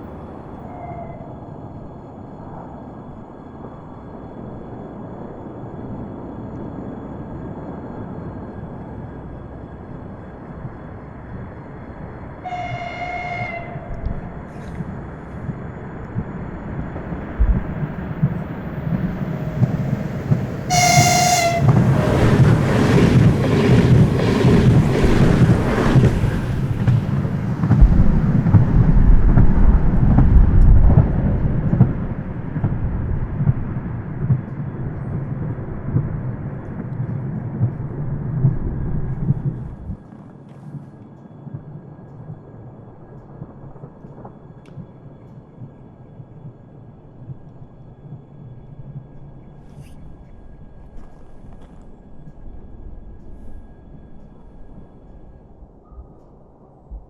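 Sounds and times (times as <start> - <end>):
train passing with wheel clatter: 0.0 - 57.0
train horn blasts: 12.4 - 14.7, 18.9 - 23.0.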